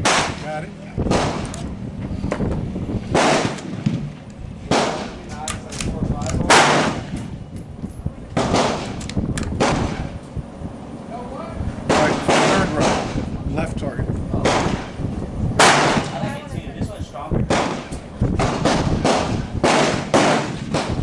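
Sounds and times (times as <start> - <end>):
rifle shots: 0.0 - 0.5, 1.1 - 1.6, 3.1 - 4.1, 4.7 - 5.2, 5.8 - 7.1, 8.4 - 10.1, 11.9 - 13.2, 14.4 - 15.0, 15.6 - 16.2, 17.5 - 21.0.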